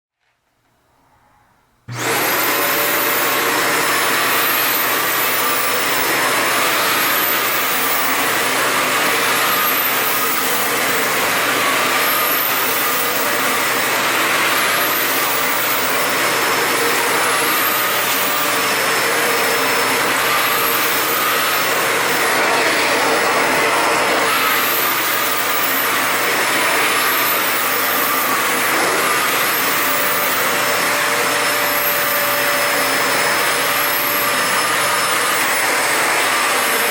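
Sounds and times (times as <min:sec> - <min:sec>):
vacuum cleaner running: 0:01.8 - 0:36.9.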